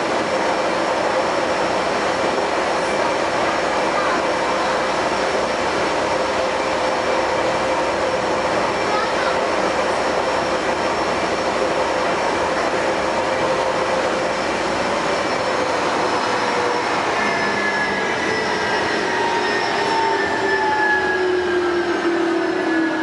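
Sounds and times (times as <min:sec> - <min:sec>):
train running noise: 0:00.0 - 0:23.0
whining tones sliding down: 0:13.6 - 0:23.0.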